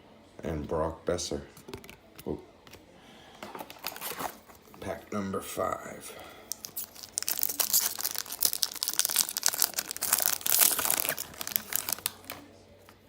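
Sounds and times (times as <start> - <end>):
card pack wrapper crinkling: 3.4 - 4.9, 6.4 - 12.5.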